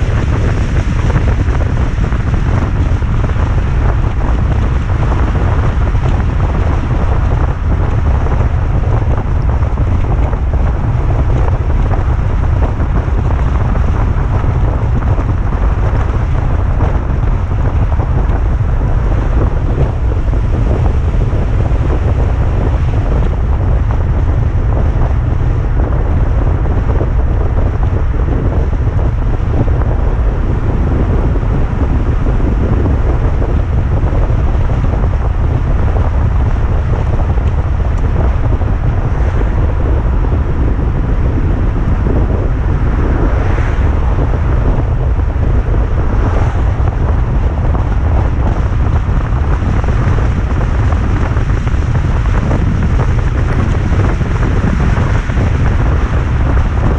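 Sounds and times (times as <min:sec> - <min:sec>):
wind buffeting microphone: 0:00.0 - 0:56.9.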